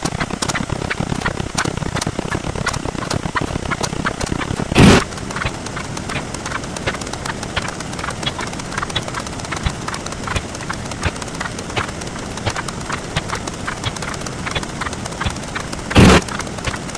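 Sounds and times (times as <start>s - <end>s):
sharp clicks and taps: 0.0s - 16.9s
noisy hiss: 4.6s - 5.0s, 15.8s - 16.3s.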